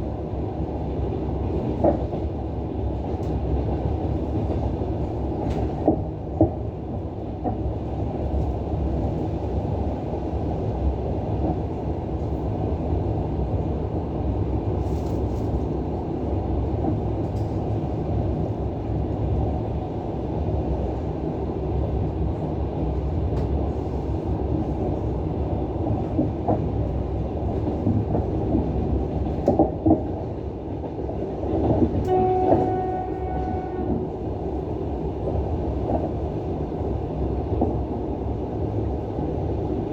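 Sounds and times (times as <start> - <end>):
train rumbling: 0.0 - 39.9
train horn: 32.0 - 34.3.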